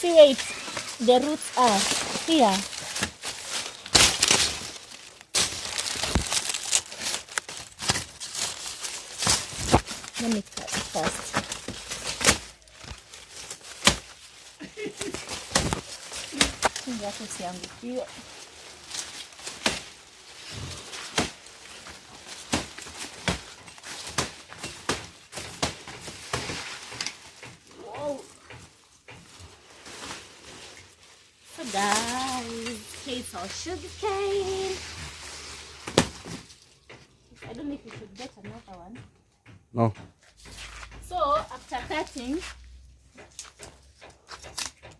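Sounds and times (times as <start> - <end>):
dry sugarcane rustling: 0.0 - 38.4, 40.4 - 44.8
machete chopping sugarcane: 35.8 - 36.5.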